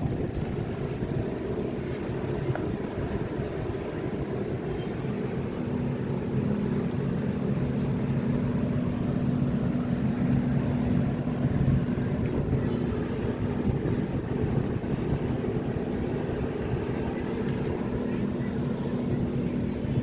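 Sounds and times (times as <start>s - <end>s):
vehicle engine hum: 0.0s - 20.0s.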